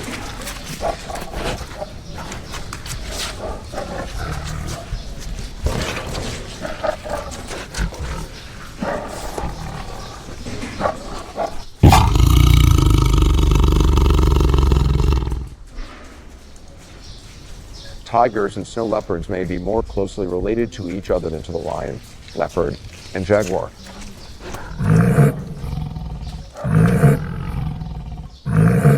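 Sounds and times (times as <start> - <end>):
tiger growling: 0.0 - 15.7, 18.7 - 28.9
tiger roaring: 3.1 - 15.6, 24.4 - 28.9.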